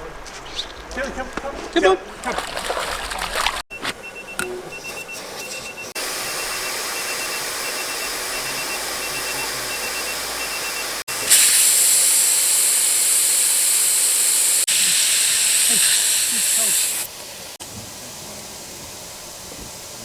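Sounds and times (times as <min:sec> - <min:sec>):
air hissing from tyre valve: 0:04.7 - 0:20.0.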